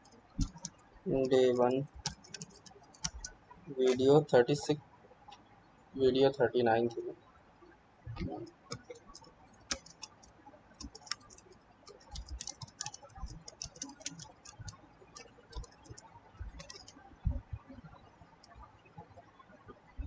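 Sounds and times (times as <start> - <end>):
computer keyboard clicking: 0.0 - 4.1, 8.5 - 17.0
dull low thumps: 8.1 - 8.5, 17.2 - 17.8.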